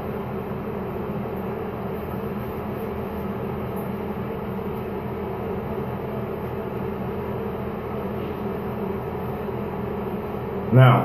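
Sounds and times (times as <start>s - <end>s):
fan humming: 0.0s - 11.0s.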